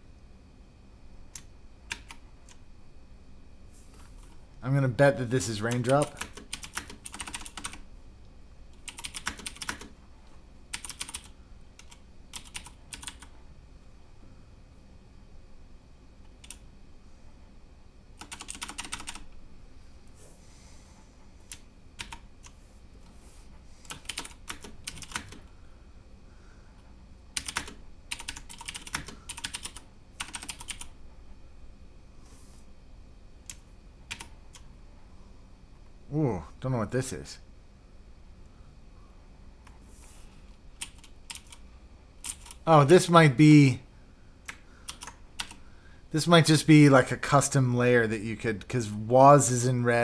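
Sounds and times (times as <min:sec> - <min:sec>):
mechanical keyboard typing: 0:01.4 - 0:02.6, 0:05.7 - 0:07.8, 0:08.8 - 0:09.9, 0:10.7 - 0:13.3, 0:18.2 - 0:19.3, 0:21.5 - 0:22.3, 0:23.9 - 0:25.5, 0:27.4 - 0:30.9, 0:33.5 - 0:34.6, 0:40.8 - 0:41.6, 0:42.2 - 0:42.6, 0:44.5 - 0:45.6.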